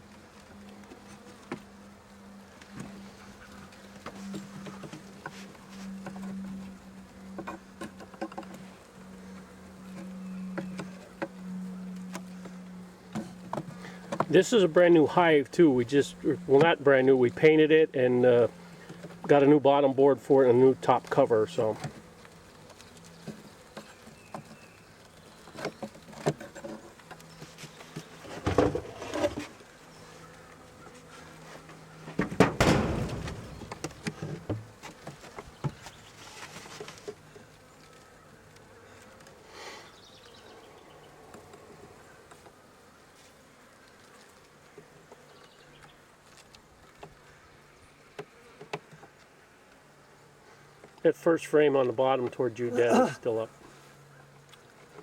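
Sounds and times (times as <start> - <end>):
honey bees buzzing: 0.0 - 55.0
loud knocks and bumps: 32.2 - 34.7.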